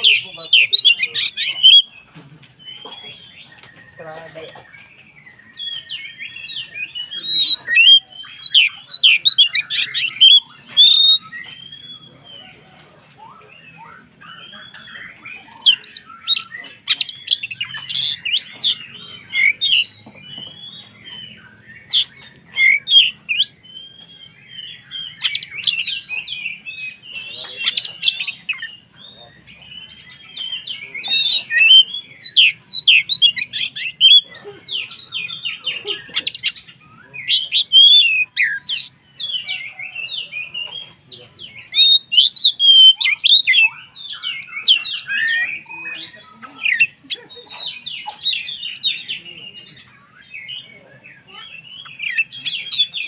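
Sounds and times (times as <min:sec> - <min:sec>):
bird singing rapid whistles: 0:00.0 - 0:02.0, 0:05.0 - 0:12.2, 0:13.4 - 0:35.6, 0:36.2 - 0:40.6, 0:41.4 - 0:47.3.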